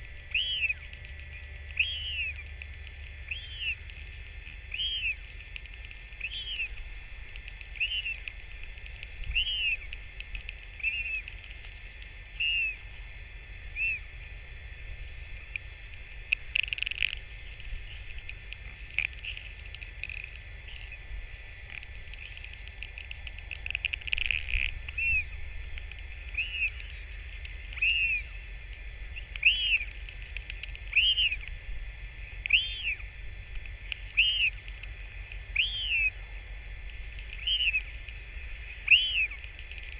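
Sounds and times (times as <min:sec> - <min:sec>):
low rumble: 0:00.0 - 0:39.9
bird whistling call: 0:00.3 - 0:00.8, 0:01.7 - 0:02.4, 0:03.3 - 0:03.8, 0:04.7 - 0:05.2, 0:06.2 - 0:06.8, 0:07.8 - 0:08.2, 0:09.3 - 0:09.9, 0:10.8 - 0:11.3, 0:12.4 - 0:12.8, 0:13.7 - 0:14.1, 0:24.3 - 0:25.3, 0:26.3 - 0:27.0, 0:27.7 - 0:28.4, 0:29.2 - 0:29.9, 0:30.9 - 0:31.4, 0:32.4 - 0:33.0, 0:34.1 - 0:34.6, 0:35.5 - 0:36.2, 0:37.4 - 0:37.9, 0:38.7 - 0:39.4.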